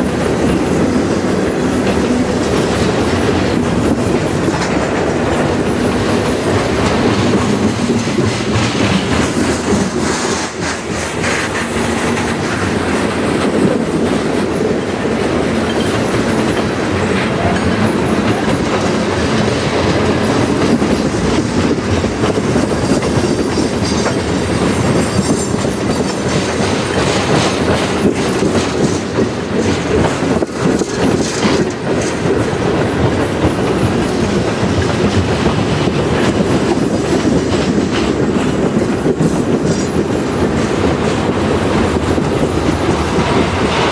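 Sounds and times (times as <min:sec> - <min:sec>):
freight train rolling by: 0:00.0 - 0:43.9
wheels clacking over rail joints: 0:00.0 - 0:43.9.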